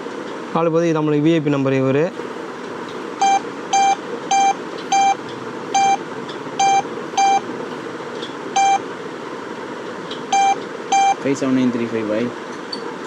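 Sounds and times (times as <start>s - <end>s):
short key beeps: 3.2s - 5.2s, 5.8s - 6.0s, 6.6s - 7.4s, 8.6s - 8.8s, 10.3s - 11.2s.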